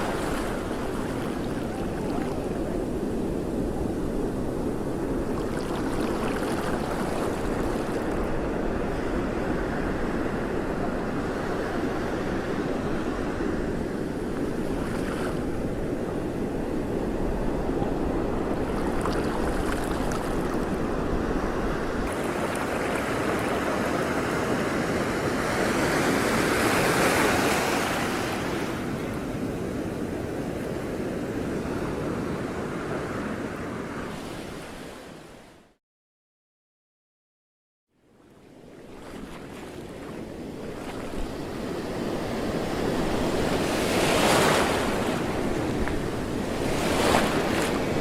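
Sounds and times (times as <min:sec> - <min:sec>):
moving water: 0:00.0 - 0:13.4, 0:17.2 - 0:24.6, 0:38.1 - 0:48.0
wind buffeting microphone: 0:40.2 - 0:48.0.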